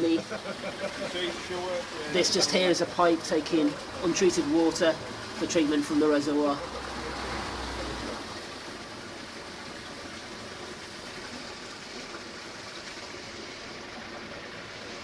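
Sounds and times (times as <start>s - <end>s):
stream water rushing: 0.0s - 15.0s.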